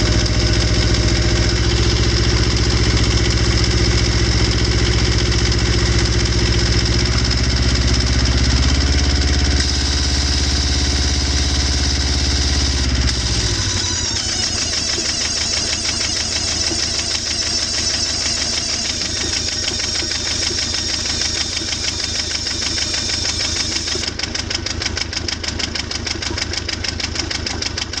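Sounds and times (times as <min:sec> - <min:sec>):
marine diesel engine running: 0:00.0 - 0:24.1
fast even gearbox rattle: 0:09.6 - 0:24.1.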